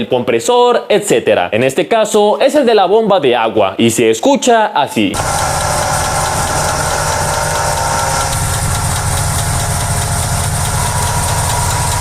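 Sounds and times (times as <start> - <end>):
car engine running: 5.2 - 12.0
water pump whine: 5.2 - 12.0.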